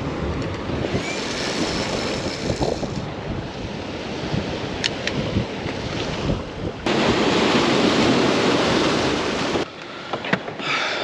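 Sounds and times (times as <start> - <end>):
wind buffeting microphone: 0.0 - 9.7
surf breaking on shore: 6.0 - 9.7.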